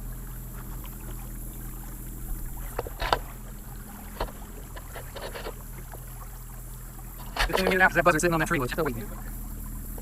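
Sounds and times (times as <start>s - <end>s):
boat motor humming: 0.0s - 10.0s
knocks on boat: 2.5s - 6.0s, 7.1s - 9.1s.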